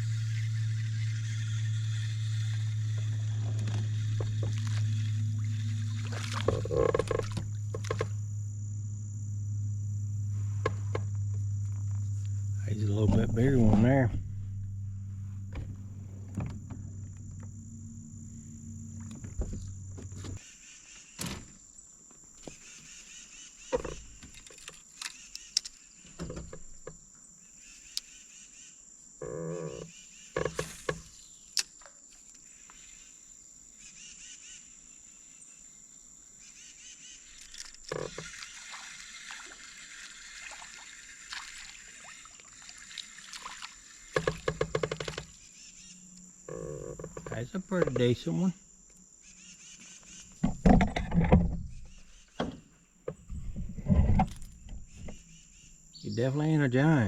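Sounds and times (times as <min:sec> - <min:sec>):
low hum: 0:00.0 - 0:20.4, 0:53.0 - 0:56.0
insect chorus: 0:00.0 - 0:57.0.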